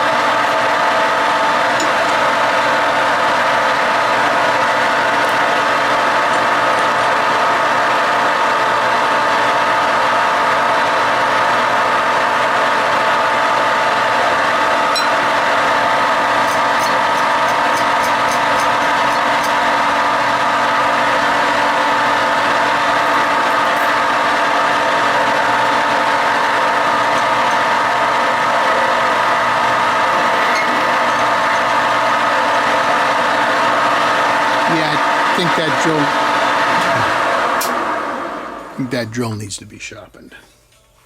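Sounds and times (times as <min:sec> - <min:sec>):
metal lathe humming with whine: 0:00.0 - 0:38.8.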